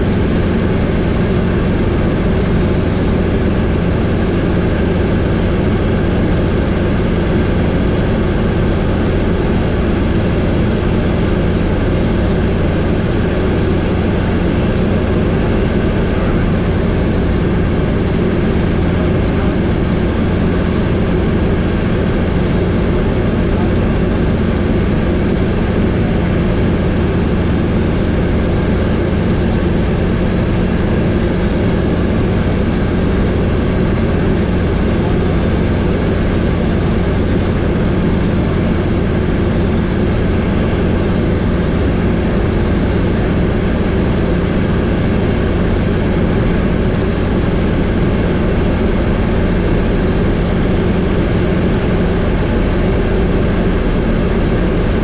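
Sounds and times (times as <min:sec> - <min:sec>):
helicopter engine and rotor drone: 0:00.0 - 0:55.0.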